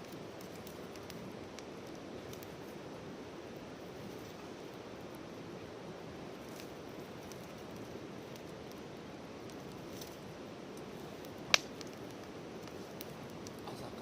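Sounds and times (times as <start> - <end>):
campfire hissing and crackling: 0.0 - 14.0
sharp pop from fire: 11.5 - 12.0.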